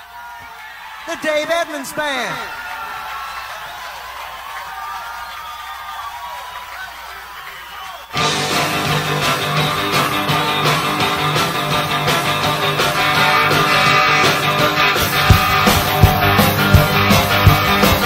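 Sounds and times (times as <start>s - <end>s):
rock guitar intro: 8.2s - 18.0s.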